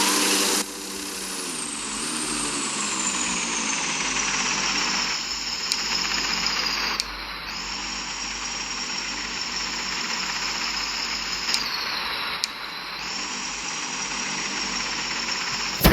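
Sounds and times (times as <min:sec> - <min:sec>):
jet engine rushing: 0:15.6 - 0:15.9.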